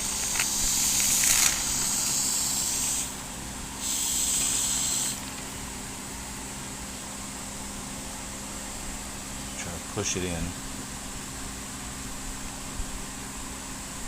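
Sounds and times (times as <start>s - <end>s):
expanding foam hissing from can: 0.2s - 3.2s, 3.8s - 5.3s.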